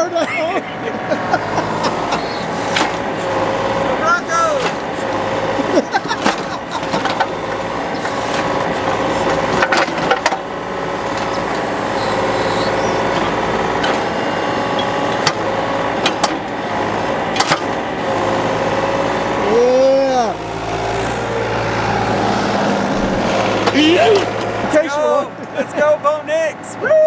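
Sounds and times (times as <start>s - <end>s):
mini excavator engine running: 0.0s - 27.0s
hydraulic hum: 1.1s - 25.6s
sharp knocks and clanks: 1.4s - 18.2s, 22.2s - 25.6s.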